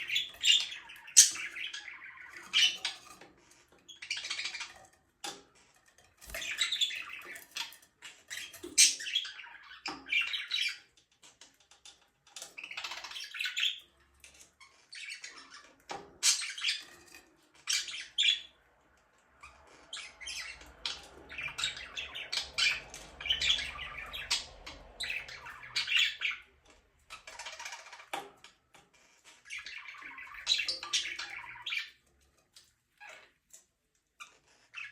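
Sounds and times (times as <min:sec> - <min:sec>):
budgerigars chirping and squawking: 0:00.0 - 0:04.9, 0:06.0 - 0:33.4, 0:34.2 - 0:34.9.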